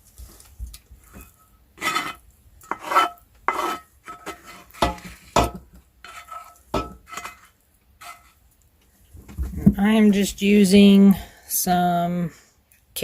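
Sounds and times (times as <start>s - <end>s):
utensil scraping cast iron pot: 1.0s - 8.5s.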